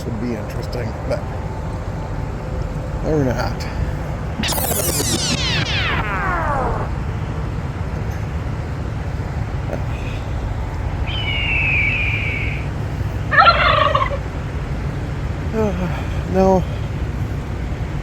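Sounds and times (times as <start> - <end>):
idling trucks rumble: 0.0 - 4.3, 7.4 - 18.0
falling whistle-like tone: 4.4 - 7.0
loud harsh call: 11.1 - 12.7, 13.3 - 14.2.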